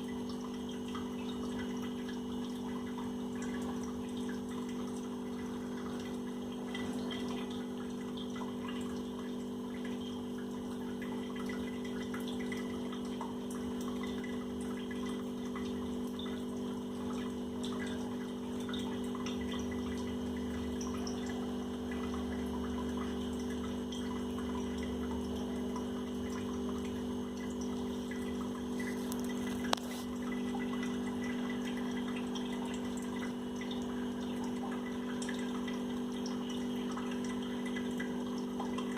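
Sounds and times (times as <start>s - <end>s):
low mechanical hum: 0.0s - 38.9s
kitten lapping and chewing: 28.7s - 30.2s.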